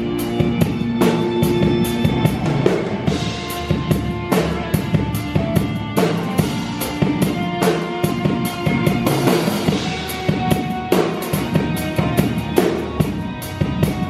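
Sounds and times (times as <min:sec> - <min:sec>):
band playing music: 0:00.0 - 0:14.0.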